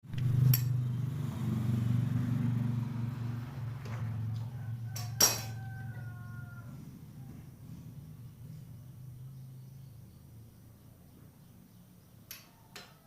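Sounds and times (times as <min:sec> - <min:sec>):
sharp metal clank ringing: 0:05.0 - 0:05.6.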